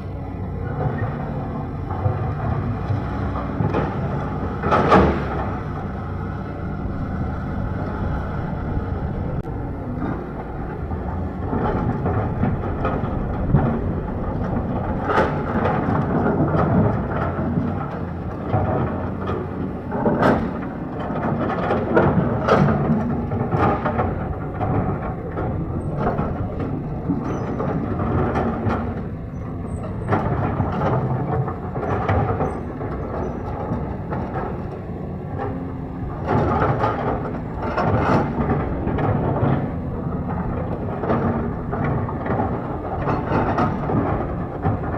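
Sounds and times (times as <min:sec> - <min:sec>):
diesel engine under load: 0:00.0 - 0:44.9
metal clanks and knocks: 0:00.0 - 0:44.9.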